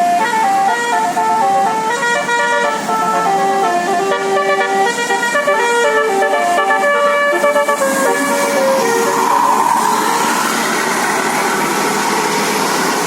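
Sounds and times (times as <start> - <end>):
bus horn playing a melody: 0.0 - 10.2.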